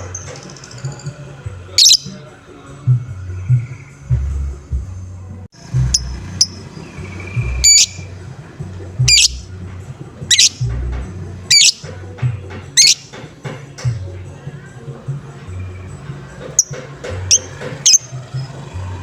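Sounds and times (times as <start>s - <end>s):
background music with low beat: 0.0s - 19.0s
lovebird harsh calls: 1.7s - 2.2s, 5.8s - 8.2s, 9.0s - 9.5s, 10.3s - 10.8s, 11.5s - 11.9s, 12.7s - 13.2s, 16.6s - 18.5s.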